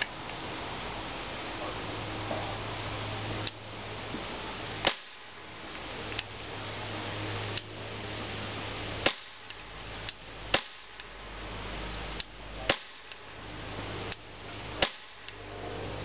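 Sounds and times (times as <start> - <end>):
pistol shots cracking: 4.8 - 5.4, 9.0 - 9.6, 10.5 - 11.1, 12.6 - 13.4, 14.8 - 15.4.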